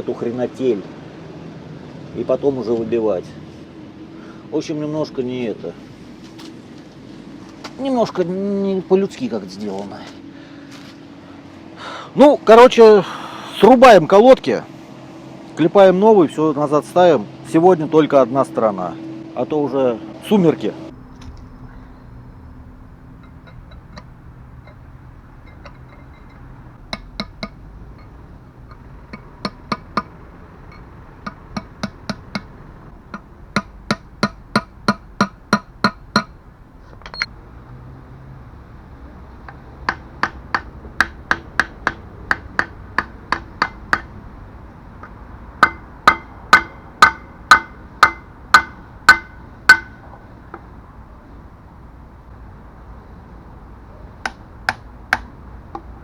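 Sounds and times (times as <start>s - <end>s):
hammer striking metal: 25.4s - 36.4s, 39.5s - 44.2s, 45.6s - 50.0s.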